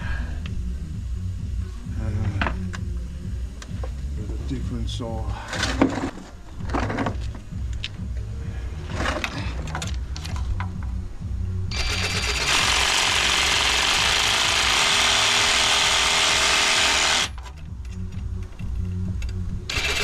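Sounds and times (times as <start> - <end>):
power saw cutting metal: 11.7 - 17.3, 19.7 - 20.0
tools clicking and scraping: 17.1 - 20.0.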